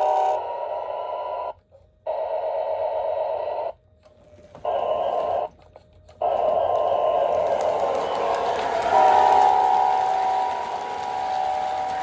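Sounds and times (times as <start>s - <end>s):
model train horn blasts: 8.4s - 12.0s.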